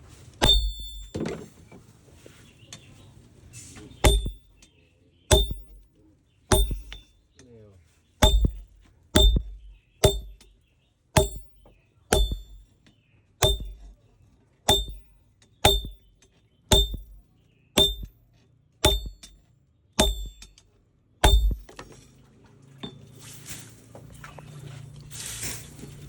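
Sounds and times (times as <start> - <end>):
hammer blows on an anvil: 0.4 - 1.2, 4.0 - 4.5, 5.3 - 5.9, 6.5 - 7.1, 8.2 - 10.4, 11.2 - 12.6, 13.4 - 13.8, 14.7 - 16.1, 16.7 - 17.2, 17.8 - 18.2, 18.8 - 19.4, 20.0 - 20.6, 21.2 - 21.7.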